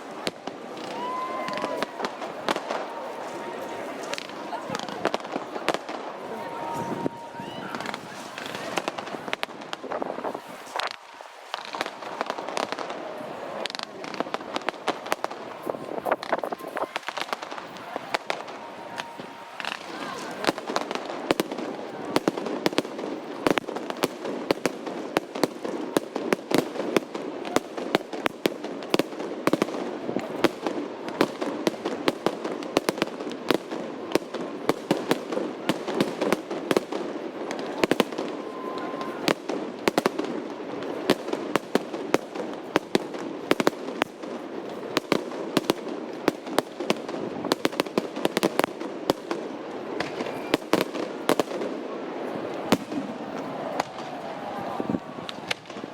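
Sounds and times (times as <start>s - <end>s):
fireworks bangs: 0.0s - 55.9s.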